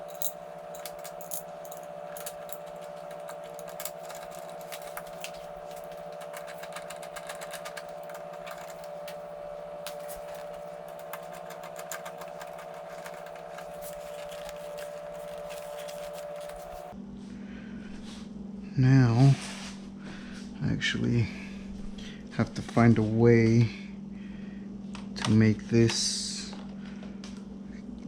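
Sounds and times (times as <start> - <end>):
hardware clicking and tapping: 0.0 - 16.9
two-tone hum: 0.0 - 17.0.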